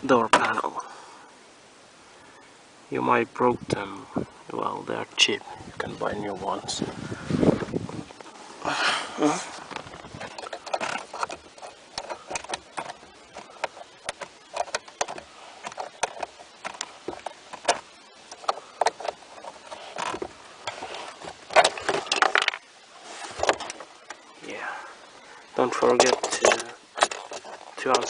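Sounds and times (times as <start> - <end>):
clicks and rattles of plastic panel: 9.7 - 22.6, 25.7 - 28.0.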